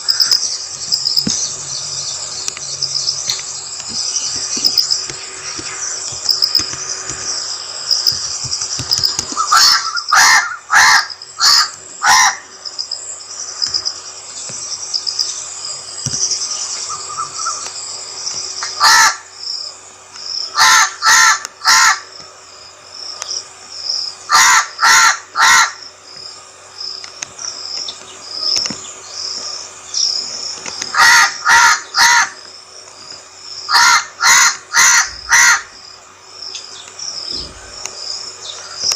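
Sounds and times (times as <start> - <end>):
high buzz of insects: 0.0 - 38.9
crow cawing: 9.3 - 12.5, 18.6 - 19.3, 20.5 - 22.1, 24.3 - 25.8, 30.9 - 32.4, 33.7 - 35.9.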